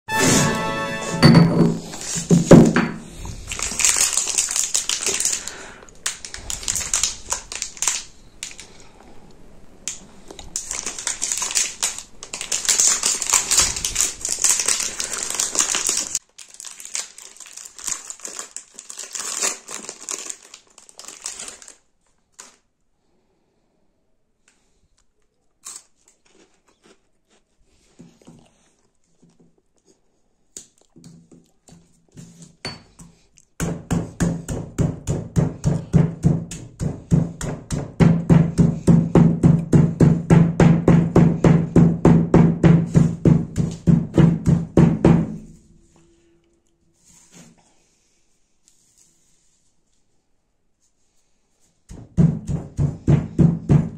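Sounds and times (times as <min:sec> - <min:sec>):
plastic wrappers crinkling: 0:03.2 - 0:08.9, 0:09.8 - 0:22.7
biscuits crunching: 0:03.3 - 0:09.0, 0:09.9 - 0:22.7, 0:25.0 - 0:32.0.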